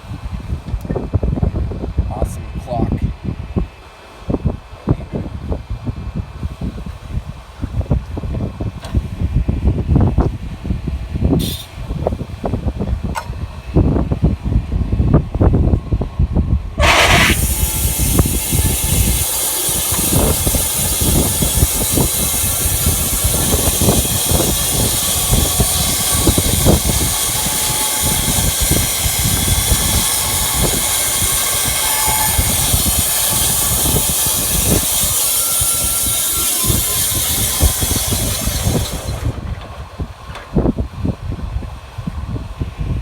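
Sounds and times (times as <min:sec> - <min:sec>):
bandsaw mill cutting wood: 0:16.8 - 0:39.6.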